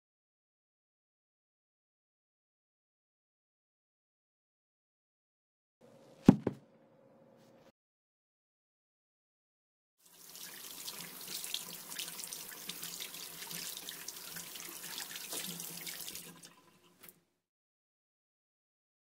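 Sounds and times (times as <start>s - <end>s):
running water splashing: 10.1s - 17.1s.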